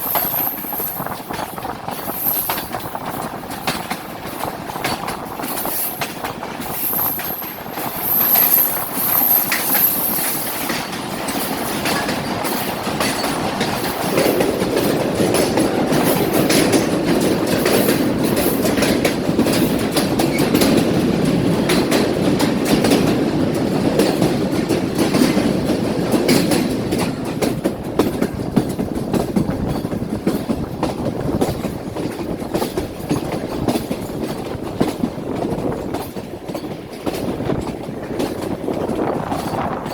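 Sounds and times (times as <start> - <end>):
train wheels clattering over rail joints: 0.0 - 39.9
thin high squeal: 6.9 - 10.2.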